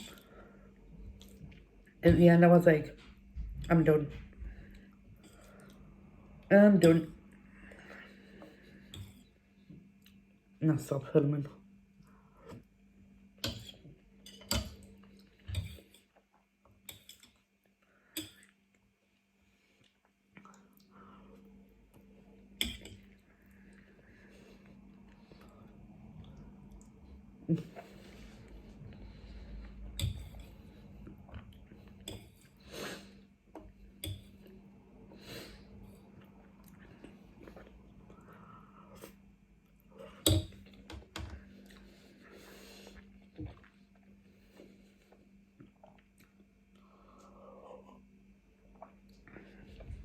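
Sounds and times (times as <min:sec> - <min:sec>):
steady low hum: 0:00.0 - 0:50.0
quiet chewing: 0:14.7 - 0:34.6, 0:35.8 - 0:50.0.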